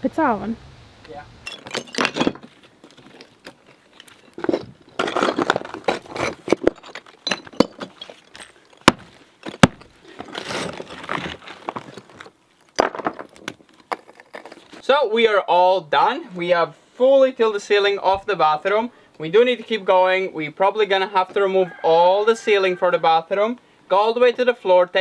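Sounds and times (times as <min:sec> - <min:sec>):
sharp knocks of bricks: 0:01.5 - 0:03.7, 0:04.4 - 0:10.6, 0:12.8 - 0:14.6
bricks and rubble scraping and rattling: 0:01.5 - 0:14.8.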